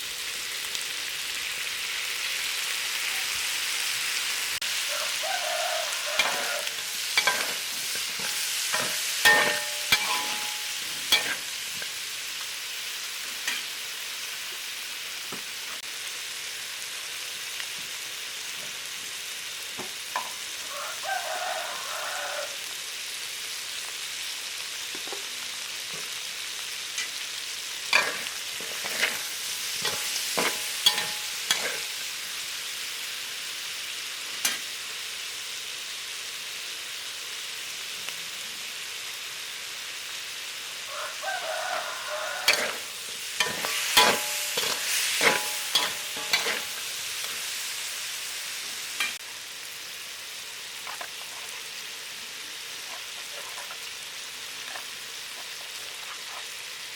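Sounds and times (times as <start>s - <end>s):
food sizzling in a hot pan: 0.0s - 56.9s
utensil scraping against pan: 5.9s - 11.9s, 27.9s - 32.0s, 42.2s - 46.9s, 52.8s - 53.9s.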